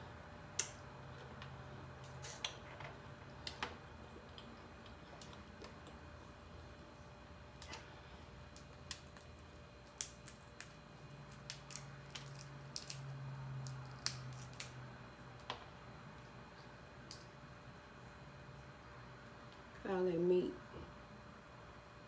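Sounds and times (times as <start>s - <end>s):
low steady hum: 0.0s - 22.0s
crab shell cracking: 8.5s - 14.8s.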